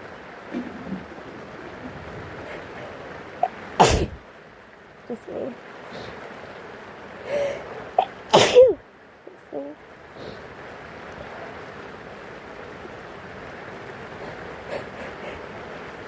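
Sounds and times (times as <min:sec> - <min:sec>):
steady rain hiss: 0:00.0 - 0:16.0
person sneezing: 0:08.0 - 0:08.7.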